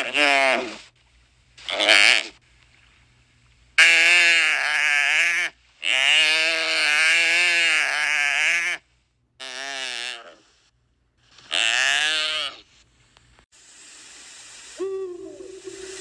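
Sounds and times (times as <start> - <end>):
animal long quavering calls: 3.8 - 8.8, 9.4 - 10.5, 11.5 - 12.6, 14.8 - 16.0.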